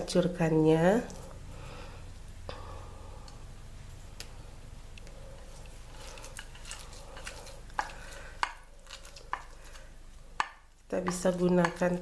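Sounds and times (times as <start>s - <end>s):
hands crushing leaves in oil: 5.4s - 12.0s.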